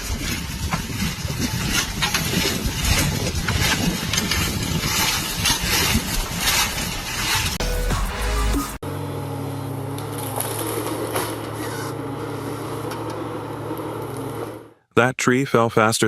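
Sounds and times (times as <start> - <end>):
heavy machine engine rumbling: 0.0 - 14.7.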